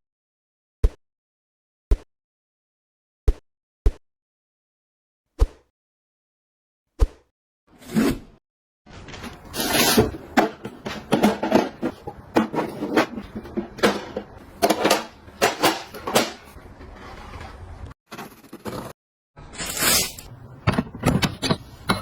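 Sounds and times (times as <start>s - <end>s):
household objects knocking and clicking: 10.3s - 16.5s.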